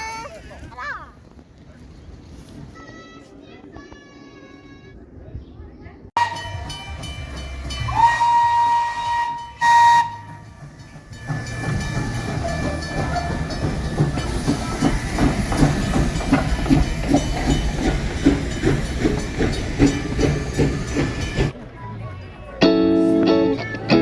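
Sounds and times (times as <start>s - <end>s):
steam locomotive whistle: 6.2s - 16.1s
steam hissing: 6.2s - 21.6s
steam engine chuffing: 6.2s - 24.0s.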